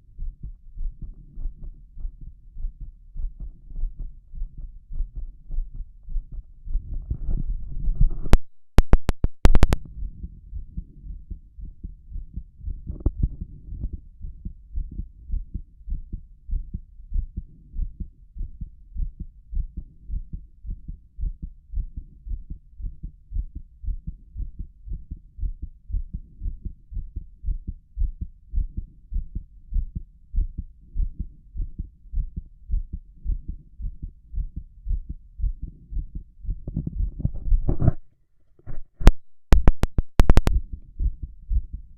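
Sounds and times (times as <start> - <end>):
heartbeat through stethoscope: 0.0 - 38.0, 38.6 - 41.9
stethoscope knocking against skin: 38.6 - 41.3.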